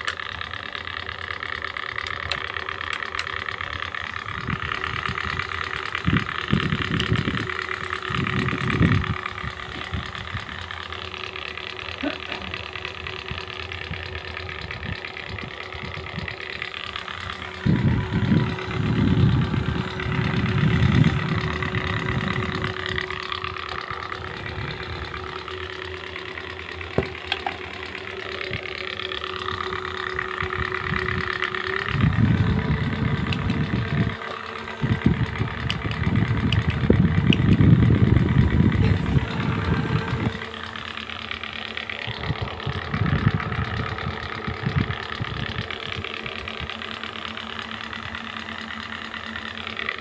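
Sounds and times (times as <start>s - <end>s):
electric fans humming: 0.0s - 50.0s
airflow rumbling on microphone: 4.1s - 10.7s, 14.6s - 41.0s, 42.0s - 46.4s.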